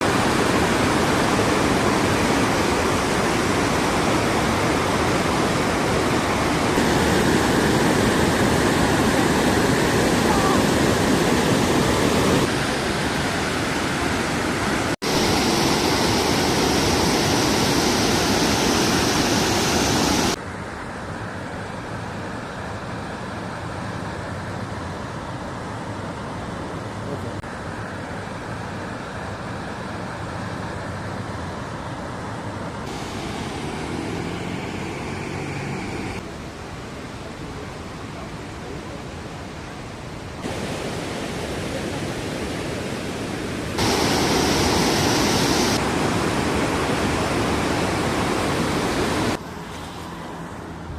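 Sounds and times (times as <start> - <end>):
waterfall rushing: 0.0 - 20.4, 32.9 - 38.1, 40.4 - 49.4.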